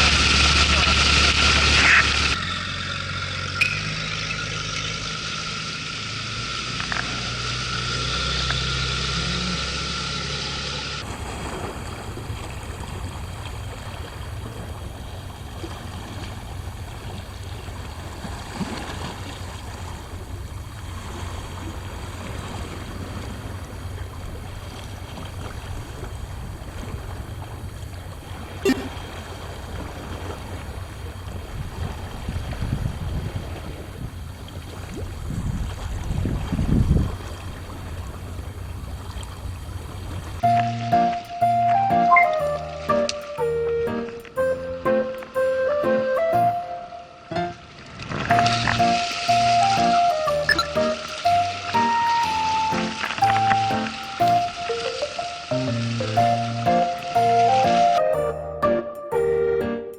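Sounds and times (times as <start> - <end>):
low steady drone: 0.0 - 11.3, 40.4 - 59.9
sea noise: 0.0 - 59.9
wind on microphone: 31.4 - 34.3, 34.9 - 37.6.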